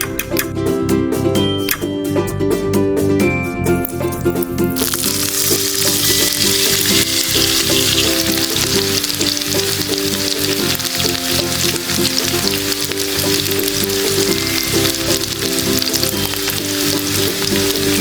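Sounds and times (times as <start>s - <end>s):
background music: 0.0s - 18.0s
oil sizzling in a pan: 4.8s - 18.0s.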